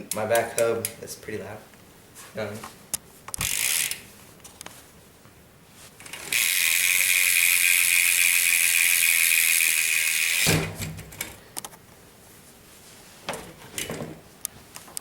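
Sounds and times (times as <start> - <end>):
bike hub ratchet buzzing: 3.4 - 4.1, 6.0 - 11.3.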